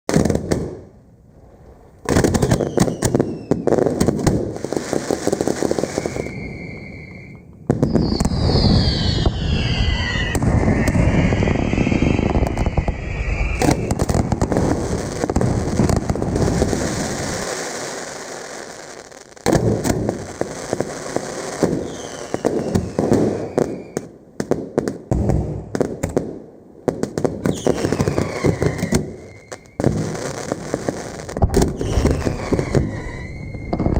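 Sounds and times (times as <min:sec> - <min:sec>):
fireworks bangs and crackling: 0:00.1 - 0:33.9
falling firework whistles: 0:02.1 - 0:24.1, 0:27.4 - 0:33.9
short steady whistle: 0:08.0 - 0:14.0.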